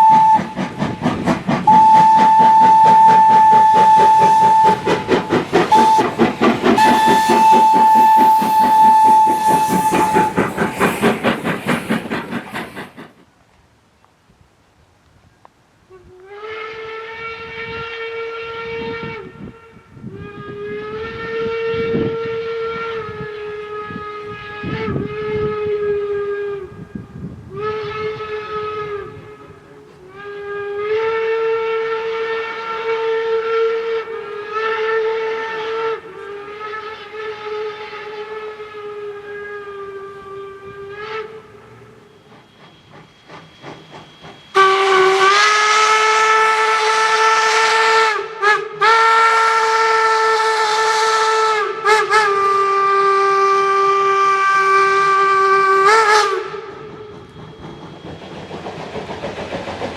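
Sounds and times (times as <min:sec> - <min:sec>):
steam whistle blasts: 0:00.0 - 0:11.0, 0:15.9 - 0:58.2
low irregular thumps: 0:00.1 - 0:13.2.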